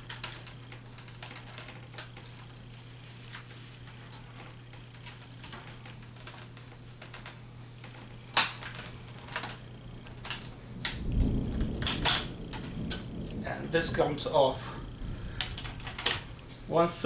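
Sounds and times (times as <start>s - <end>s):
clicks and knocks of handling: 0.0s - 2.6s, 3.2s - 13.4s, 15.4s - 16.7s
sharp plastic snap: 8.4s - 8.8s.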